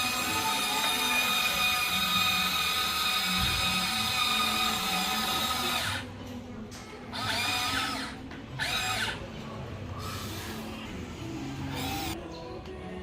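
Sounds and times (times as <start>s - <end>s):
small electric motors whining: 0.0s - 6.1s, 7.1s - 9.2s.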